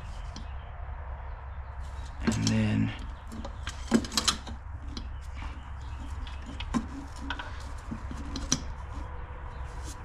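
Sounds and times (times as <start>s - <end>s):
pipe clicks and taps: 5.9s - 9.0s.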